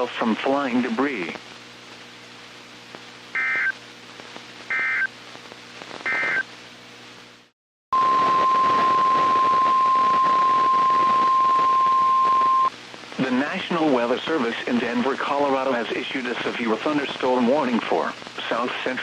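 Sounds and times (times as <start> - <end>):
radio hiss: 0.0 - 19.0
steady warning alarm tone: 3.4 - 3.7, 4.7 - 5.1, 6.1 - 6.4
warbling data tone bursts: 3.4 - 3.8, 4.7 - 5.1, 6.0 - 6.4.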